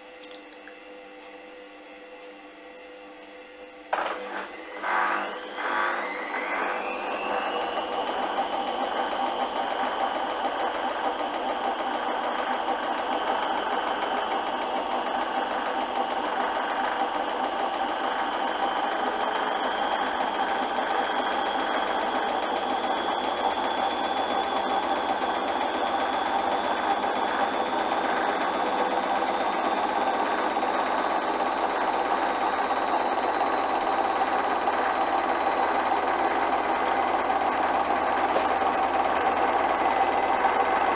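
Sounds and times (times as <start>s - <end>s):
washing machine motor whine: 0.0s - 40.9s
washing machine drum rushing: 4.0s - 40.9s.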